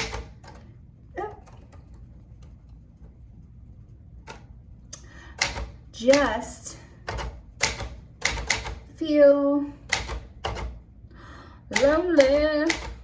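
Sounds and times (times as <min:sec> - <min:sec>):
typewriter keystrokes: 0:00.0 - 0:00.7, 0:05.4 - 0:06.4, 0:07.1 - 0:08.8, 0:09.9 - 0:10.8, 0:11.7 - 0:13.0.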